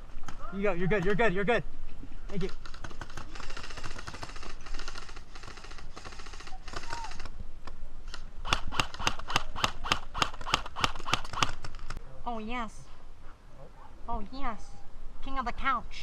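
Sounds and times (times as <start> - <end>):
airsoft guns firing: 2.5 - 7.2, 8.4 - 11.9.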